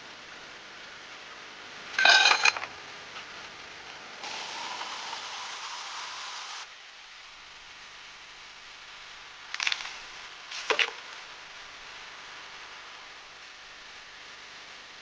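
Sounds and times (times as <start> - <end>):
steady hiss: 0.0 - 15.0
loud ringing clink: 2.0 - 2.6
metal cookware clattering: 2.0 - 2.7.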